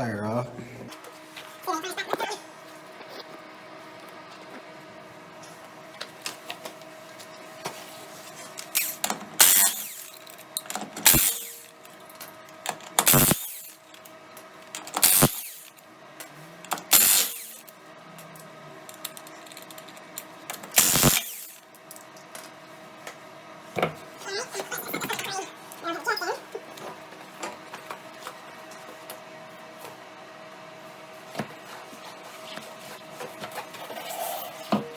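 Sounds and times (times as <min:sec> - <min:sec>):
steady hum: 0:08.2 - 0:21.9
impact wrench bursts: 0:08.6 - 0:12.0, 0:12.7 - 0:13.9, 0:14.8 - 0:15.8, 0:16.6 - 0:17.7, 0:18.9 - 0:21.7.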